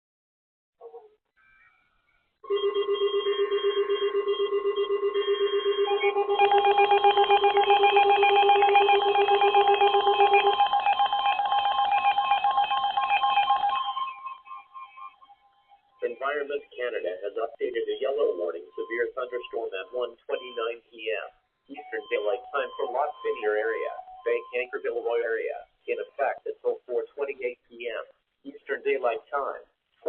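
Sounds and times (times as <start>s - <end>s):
pulsing electronic alert tones: 2.5s - 16.4s, 21.7s - 25.2s.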